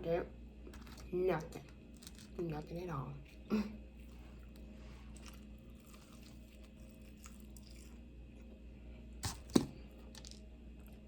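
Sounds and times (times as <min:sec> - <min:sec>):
chewing food: 0:03.2 - 0:08.6.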